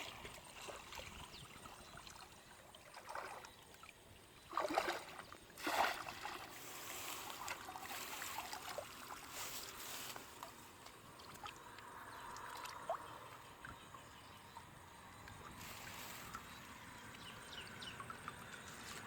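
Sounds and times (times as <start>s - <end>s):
water sloshing and trickling: 0.0s - 19.0s
water splashing: 0.0s - 19.0s.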